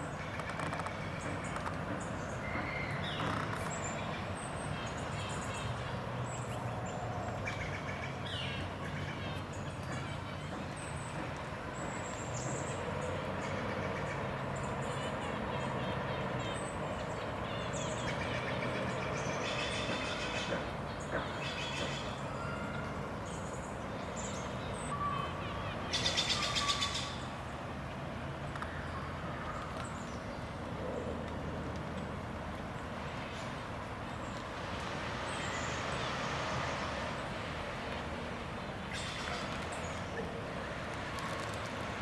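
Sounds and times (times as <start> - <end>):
distant traffic rumble: 0.0 - 42.0.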